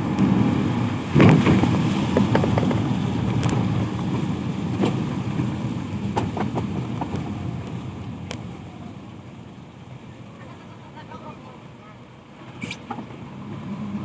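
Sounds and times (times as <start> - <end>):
low vehicle rumble: 0.0 - 14.0.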